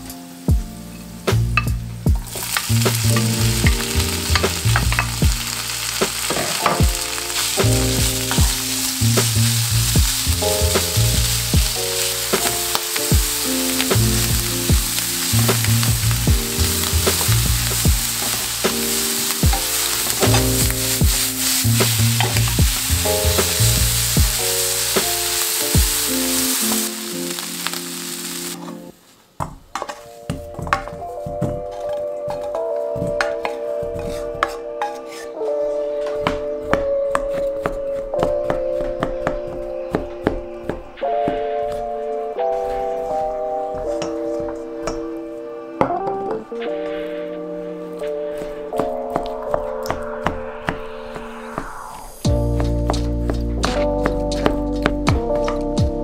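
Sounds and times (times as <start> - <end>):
background music: 0.0 - 29.0, 29.7 - 56.0
food sizzling in a pan: 1.6 - 28.8.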